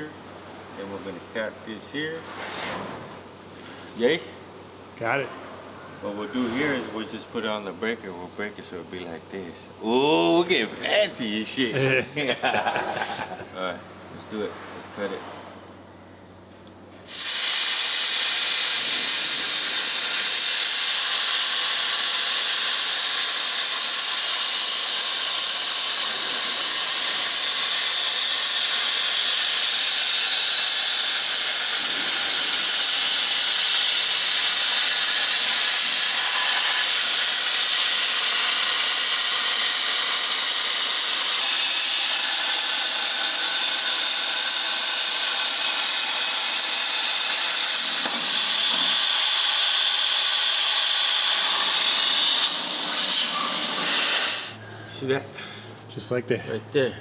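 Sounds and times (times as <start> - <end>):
plasma cutter hissing: 17.1 - 54.6.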